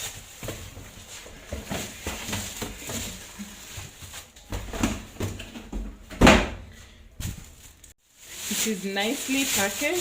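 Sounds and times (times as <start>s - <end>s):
packaging rustling: 0.0s - 5.4s, 7.2s - 10.0s.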